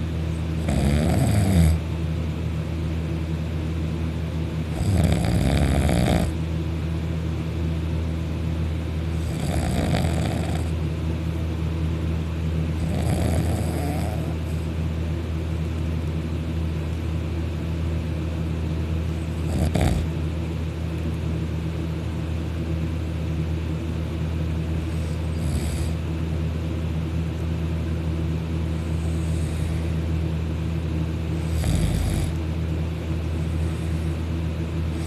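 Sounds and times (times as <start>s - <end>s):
steady low hum: 0.0s - 35.0s
loud rasping snores: 0.6s - 1.8s, 4.7s - 6.4s, 9.2s - 10.8s, 12.8s - 14.5s, 19.4s - 20.1s, 24.9s - 26.0s, 28.9s - 30.0s, 31.4s - 32.4s.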